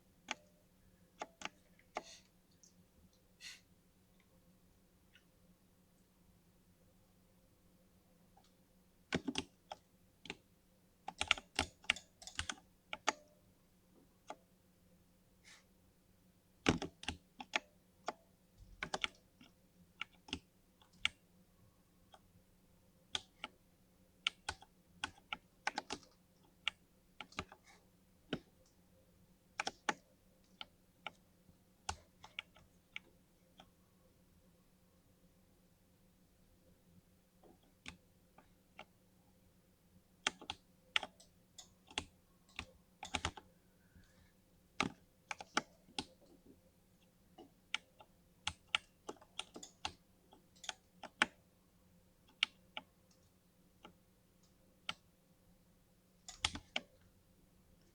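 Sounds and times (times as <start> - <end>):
mechanical keyboard typing: 11.1 - 13.2, 16.6 - 17.6, 24.3 - 27.6, 40.2 - 43.5, 47.7 - 51.4, 56.3 - 56.9.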